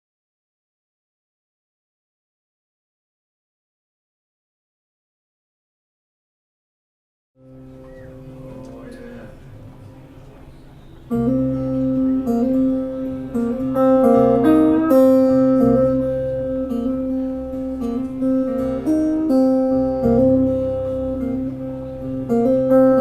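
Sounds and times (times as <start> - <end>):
acoustic guitar chords: 7.4 - 23.0.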